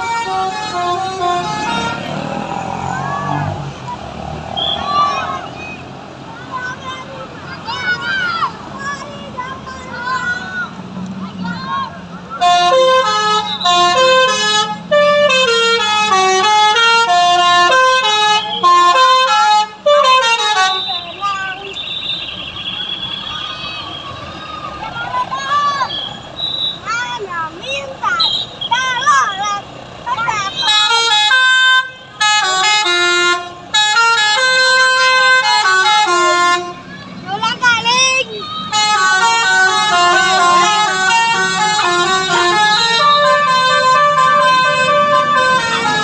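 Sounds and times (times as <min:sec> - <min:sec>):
musical bus horn tune: 0:00.0 - 0:02.5, 0:12.4 - 0:23.3, 0:30.6 - 0:36.9, 0:38.3 - 0:46.0.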